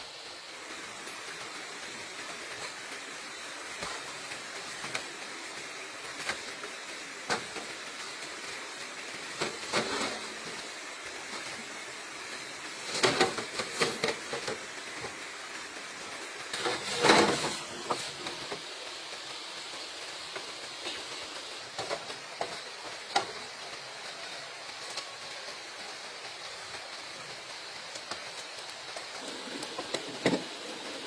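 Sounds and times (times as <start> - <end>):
steady hiss: 0.0 - 31.0
scraping and rustling: 16.5 - 18.7.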